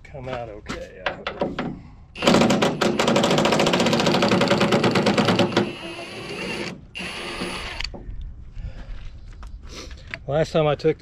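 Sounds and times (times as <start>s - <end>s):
impact wrench hammering on bolt: 1.4s - 5.8s.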